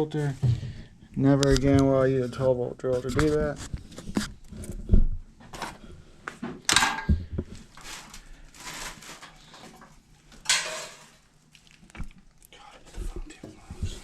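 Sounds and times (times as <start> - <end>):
metal parts knocking and clanking: 6.7 - 7.1.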